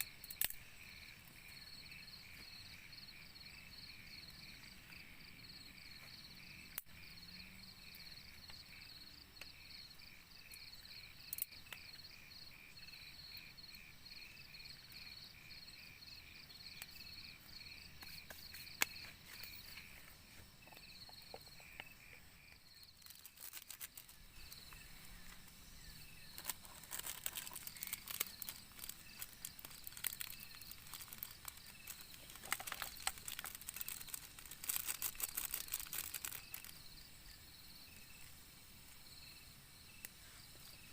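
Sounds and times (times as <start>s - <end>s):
crackling and rustling: 0.0s - 0.6s, 18.0s - 37.0s
insects chirping: 0.0s - 40.9s.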